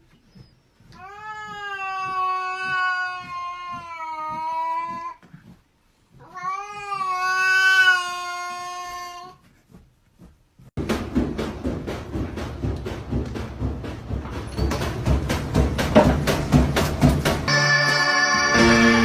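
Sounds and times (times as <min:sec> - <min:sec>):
cat meowing: 0:06.2 - 0:09.4.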